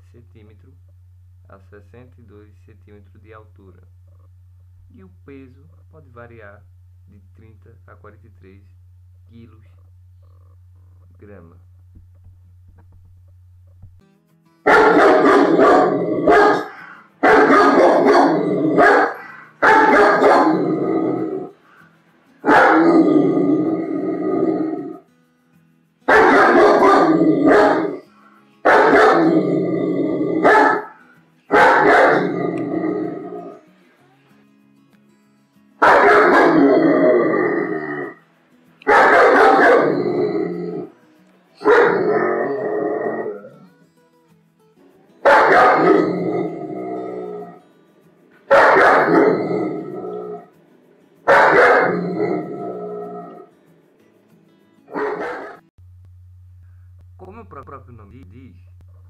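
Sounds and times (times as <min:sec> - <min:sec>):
dog barking: 0:14.7 - 0:21.5, 0:22.4 - 0:23.2, 0:26.1 - 0:29.4, 0:30.4 - 0:33.6, 0:35.8 - 0:37.0, 0:38.9 - 0:40.3, 0:41.6 - 0:42.6, 0:45.2 - 0:46.2, 0:48.5 - 0:50.5, 0:51.2 - 0:53.5, 0:54.9 - 0:55.7.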